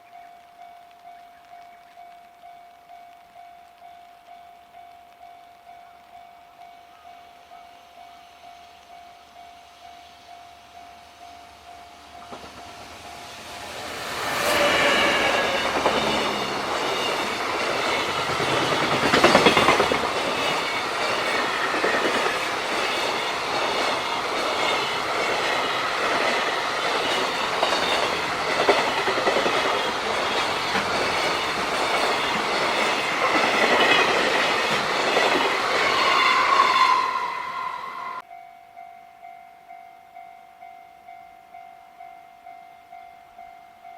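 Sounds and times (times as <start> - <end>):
freight train passing: 3.4 - 38.3
wheels clattering over rail joints: 12.2 - 35.9.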